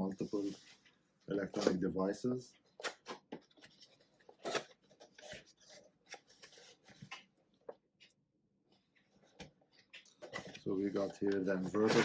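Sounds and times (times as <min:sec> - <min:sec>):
packaging scraping: 0:10.4 - 0:12.0.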